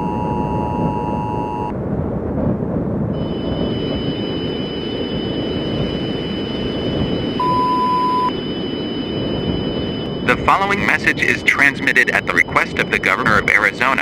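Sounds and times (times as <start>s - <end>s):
faint high whining tones: 0.0s - 1.7s, 3.2s - 14.0s
rumbling static noise: 3.1s - 14.0s
single clean beep: 7.4s - 8.4s.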